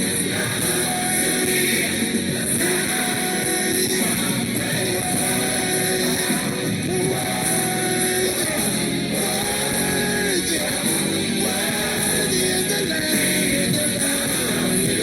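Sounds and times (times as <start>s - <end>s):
gospel song with band: 0.0s - 15.0s
singer holding long notes: 0.0s - 15.0s.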